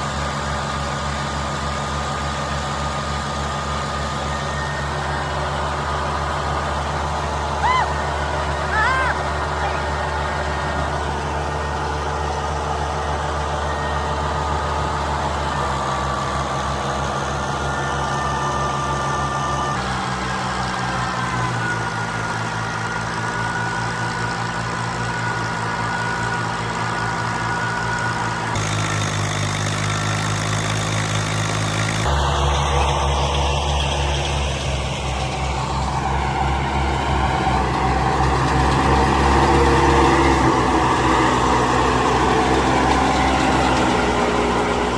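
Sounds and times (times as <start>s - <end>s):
diesel engine running under load: 0.0s - 44.9s.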